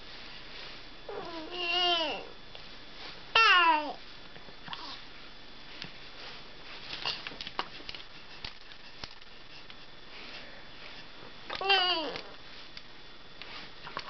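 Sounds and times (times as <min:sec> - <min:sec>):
baby soft vocal sound: 0:11.6 - 0:12.3.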